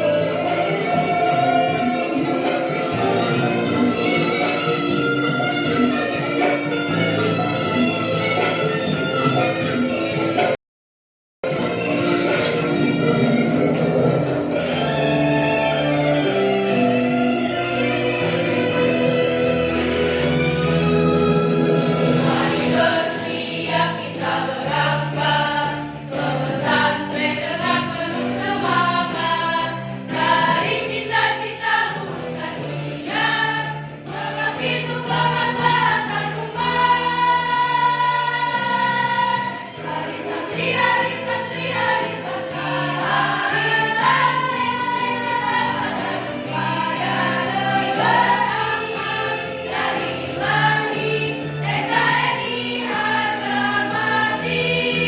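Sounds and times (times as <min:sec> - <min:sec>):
instrumental accompaniment: 0:00.0 - 0:10.6, 0:11.4 - 0:55.0
girls' choir singing: 0:21.9 - 0:55.0.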